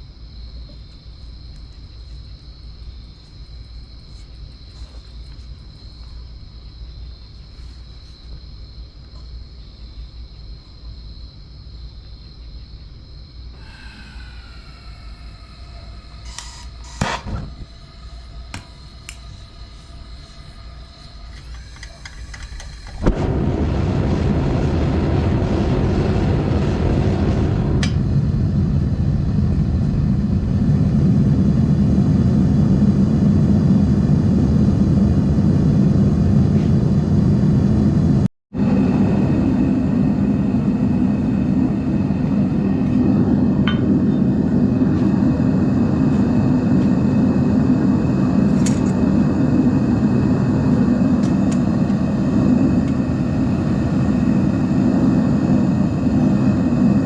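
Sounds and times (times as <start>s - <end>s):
furnace burner roaring: 13.5s - 57.0s
burner lighting pop: 16.3s - 17.6s, 21.7s - 24.5s, 27.4s - 28.1s.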